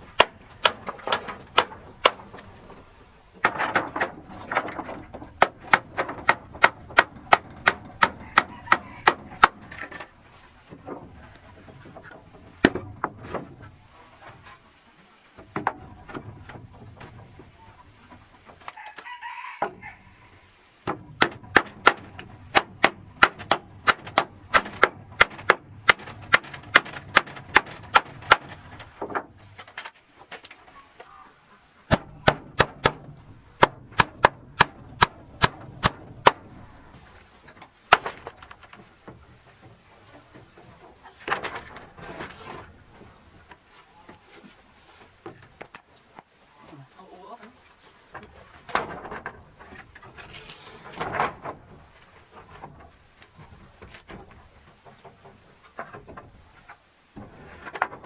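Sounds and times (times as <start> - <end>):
hammer driving nails into wood: 0.0 - 2.8, 3.4 - 10.1, 20.8 - 29.2, 31.9 - 36.8.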